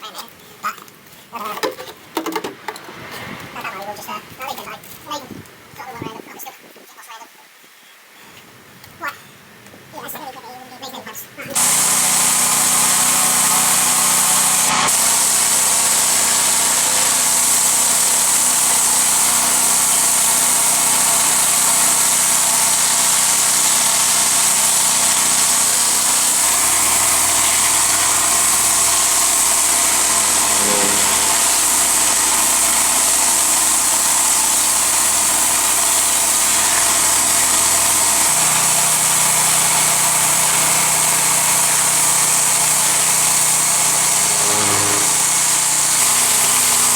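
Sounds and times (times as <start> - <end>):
pressure washer engine running: 11.6 - 46.9
water jet hissing: 11.6 - 46.9.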